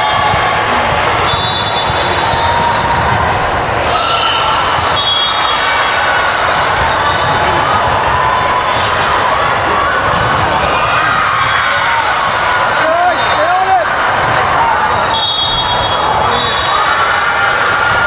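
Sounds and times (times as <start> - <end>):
volleyballs bouncing and struck: 0.0 - 12.4
many voices mixing: 0.0 - 18.0.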